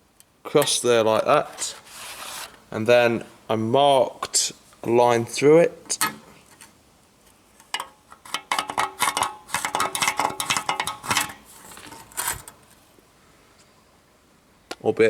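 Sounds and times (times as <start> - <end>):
metallic clinks and scrapes on panel: 7.5 - 12.8.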